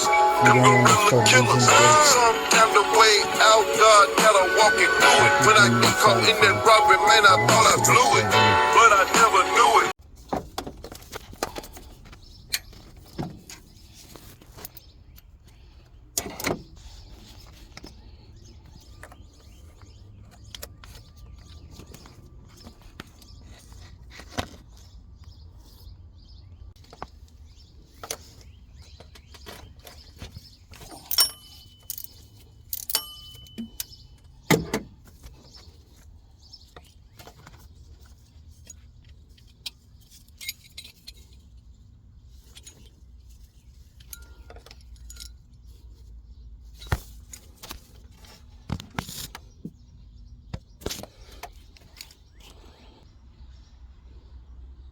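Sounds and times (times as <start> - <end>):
metal tools clinking: 30.7 - 34.4, 39.4 - 41.5, 43.8 - 45.7
metal clanks ringing: 31.0 - 32.2, 32.8 - 34.0.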